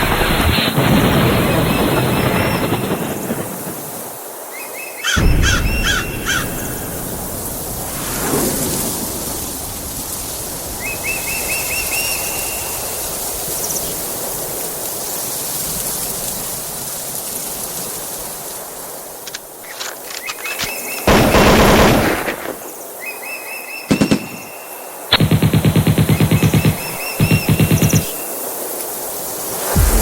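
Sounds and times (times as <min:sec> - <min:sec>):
rain hiss: 0:00.0 - 0:30.0
low rumble: 0:29.8 - 0:30.0.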